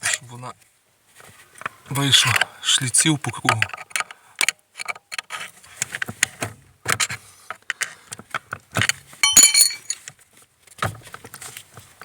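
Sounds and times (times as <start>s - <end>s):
metal clicks and knocks: 8.8s - 10.0s.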